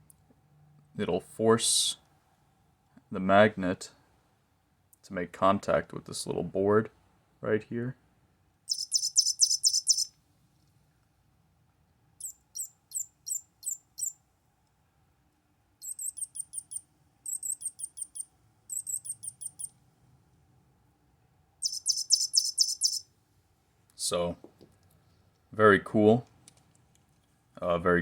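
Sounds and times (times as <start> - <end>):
toy bird electronic chirping: 8.7 - 10.1, 12.2 - 14.2, 15.8 - 19.8, 21.6 - 23.1.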